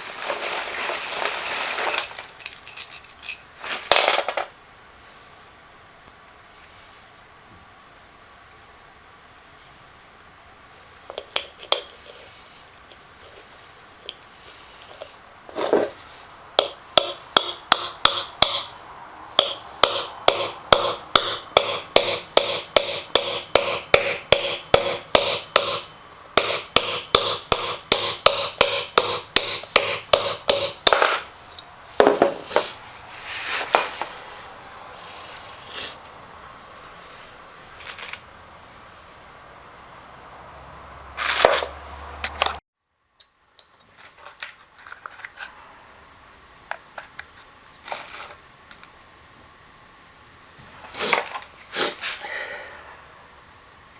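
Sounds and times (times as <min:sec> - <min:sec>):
hammer striking metal: 0:16.6 - 0:32.4.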